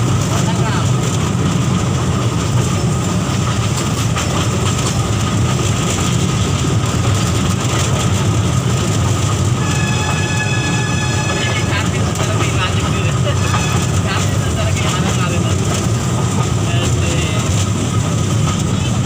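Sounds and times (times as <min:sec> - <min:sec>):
toy train rumbling on track: 0:00.0 - 0:19.0
high-pitched tone: 0:09.6 - 0:14.3.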